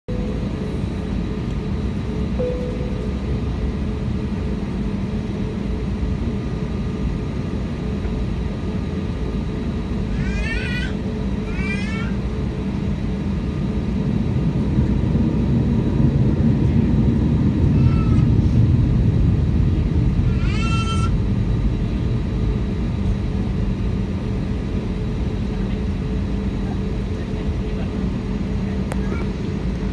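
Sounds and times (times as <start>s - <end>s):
aircraft cabin rumble: 0.1s - 29.9s.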